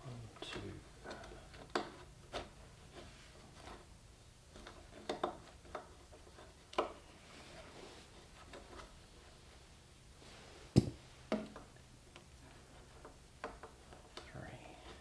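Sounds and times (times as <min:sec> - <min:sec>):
cable and tools knocking on wood: 0:10.8 - 0:11.6.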